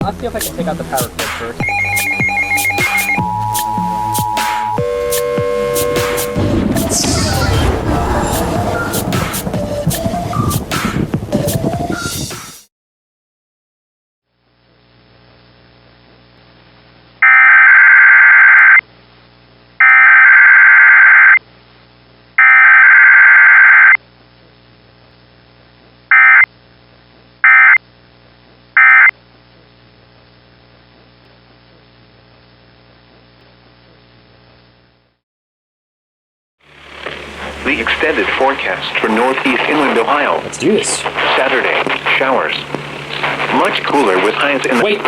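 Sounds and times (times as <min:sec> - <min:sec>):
low electrical hum: 0:18.9 - 0:19.8, 0:21.4 - 0:22.4, 0:24.0 - 0:35.0.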